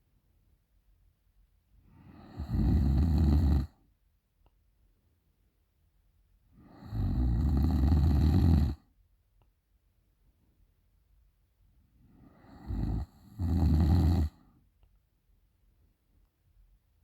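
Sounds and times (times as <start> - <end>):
woman snoring loudly: 2.2 - 3.7, 6.8 - 8.8, 12.6 - 14.4.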